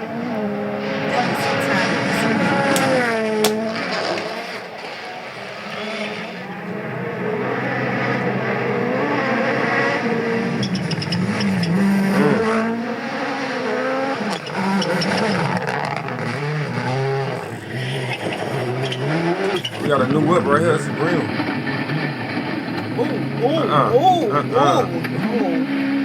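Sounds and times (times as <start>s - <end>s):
rally car engines at full throttle: 7.0s - 19.5s.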